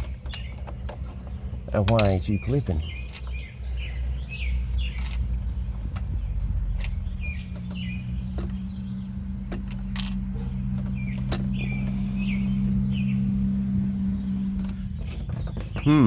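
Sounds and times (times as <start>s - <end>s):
sharp metal clicks: 0.0s - 3.5s
birds chirping: 0.0s - 16.0s
low mechanical hum: 0.0s - 16.0s.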